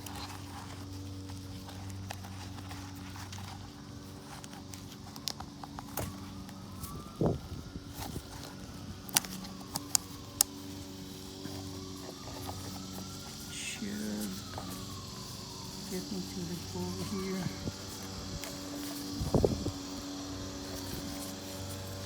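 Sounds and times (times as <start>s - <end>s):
faint siren wailing: 0.1s - 22.0s
steady low hum: 5.6s - 22.0s.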